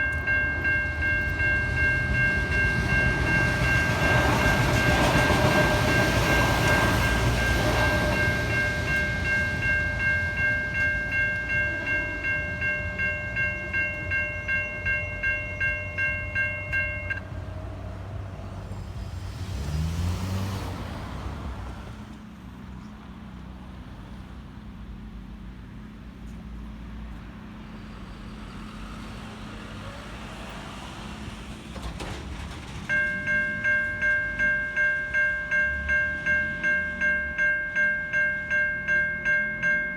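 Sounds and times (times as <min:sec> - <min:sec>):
level crossing bells ringing: 0:00.0 - 0:17.3, 0:32.8 - 0:39.9
passing train rumble: 0:00.0 - 0:39.9.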